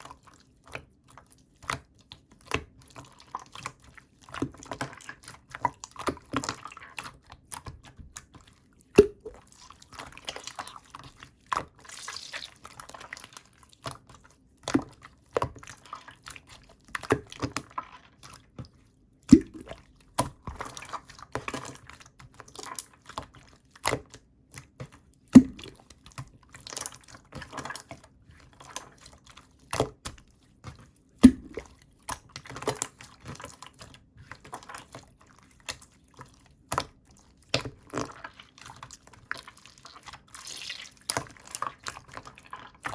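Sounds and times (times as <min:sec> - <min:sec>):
slime squished by hand: 0:01.5 - 0:18.6, 0:19.2 - 0:42.9.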